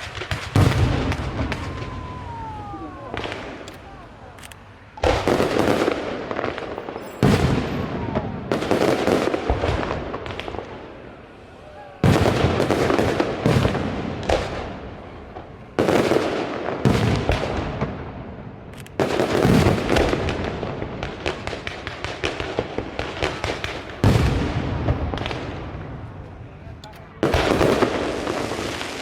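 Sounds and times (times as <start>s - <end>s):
fireworks bursting overhead: 0.0s - 29.0s
fireworks crackling: 0.0s - 29.0s.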